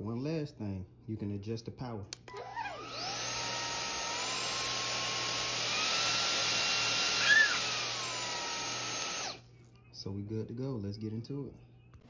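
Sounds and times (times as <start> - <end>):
vacuum motor whining: 2.2 - 9.4.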